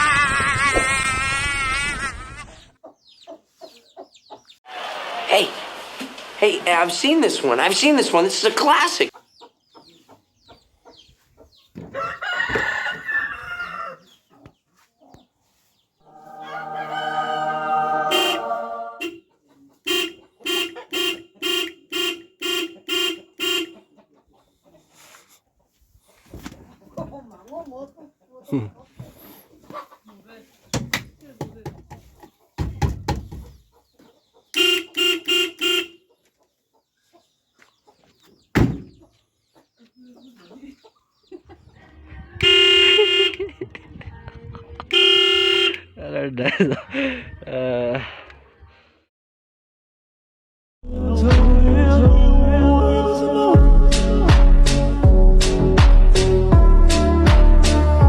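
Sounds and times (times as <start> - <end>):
chickens clucking: 1.9 - 4.8, 6.9 - 45.0
rooster crowing: 11.9 - 14.1, 16.0 - 19.1
steady horn-like tone: 16.2 - 19.2
car horn short beeps: 18.1 - 19.2, 19.9 - 23.8, 34.6 - 36.0, 42.4 - 43.4, 44.9 - 45.9
loud thump: 38.5 - 39.0.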